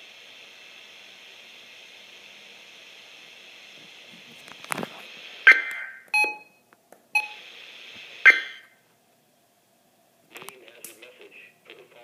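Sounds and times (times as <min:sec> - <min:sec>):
radio static hiss: 0:00.0 - 0:06.1, 0:07.2 - 0:08.9, 0:10.2 - 0:12.0
short electronic beeps: 0:05.5 - 0:06.6, 0:07.2 - 0:07.4, 0:08.3 - 0:08.7
warbling data-tone bursts: 0:08.2 - 0:08.7.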